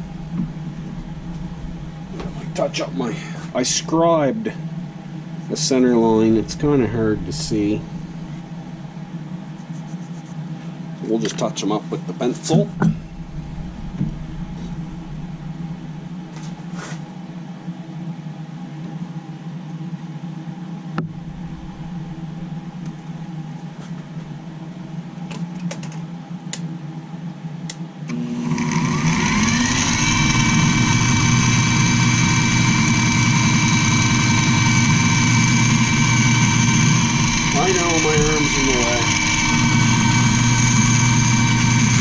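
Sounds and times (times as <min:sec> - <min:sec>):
low steady hum: 0:00.0 - 0:42.0
electric drill motor whining: 0:28.1 - 0:42.0.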